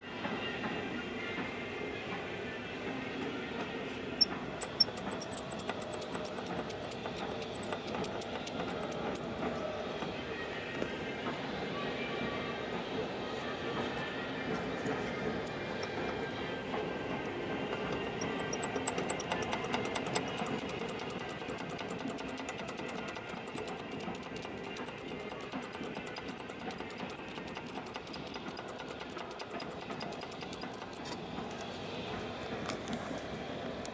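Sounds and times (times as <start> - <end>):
low engine running: 4.2 - 10.1, 13.7 - 33.0
rapid high-pitched chirping: 4.6 - 9.3, 18.2 - 31.0.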